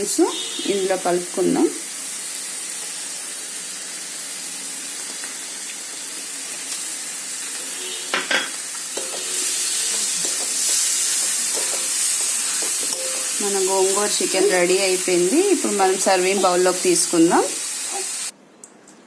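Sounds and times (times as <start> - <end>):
curry sizzling in a pan: 0.0 - 18.3
spoon knocking against pan: 10.2 - 13.4.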